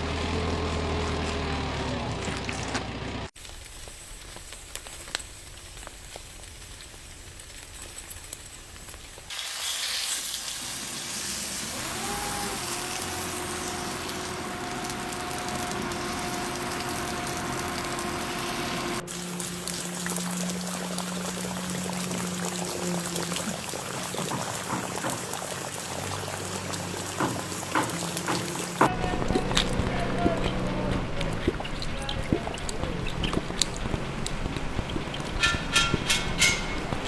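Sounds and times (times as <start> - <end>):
food sizzling on a griddle: 3.4 - 20.6.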